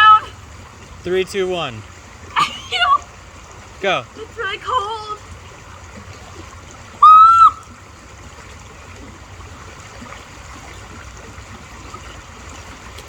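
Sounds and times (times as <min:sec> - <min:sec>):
creek rushing over rapid: 0:00.0 - 0:13.0
person squealing: 0:02.4 - 0:03.0.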